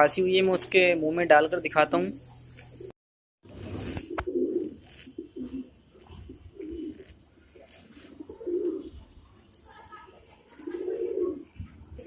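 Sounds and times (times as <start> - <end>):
pigeons cooing: 3.6 - 9.2, 10.1 - 12.0.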